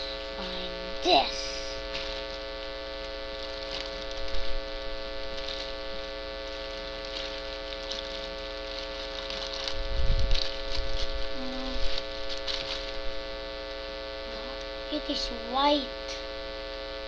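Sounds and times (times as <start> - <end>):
electrical mains hum: 0.0 - 17.0
packaging crinkling and clicking: 1.9 - 4.5, 5.3 - 11.2, 11.9 - 13.0.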